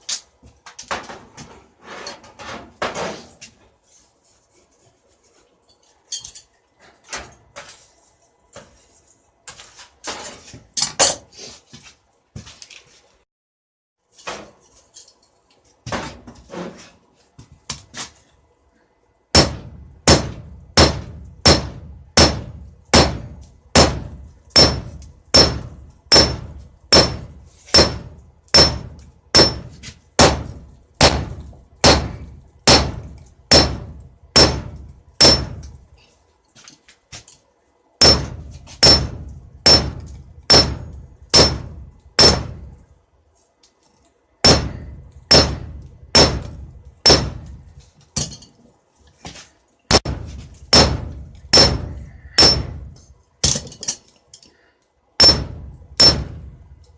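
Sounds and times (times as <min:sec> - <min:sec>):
hammer striking metal on anvil: 0:19.3 - 0:35.8, 0:38.0 - 0:42.8, 0:44.4 - 0:47.6, 0:49.9 - 0:53.6, 0:55.2 - 0:56.6.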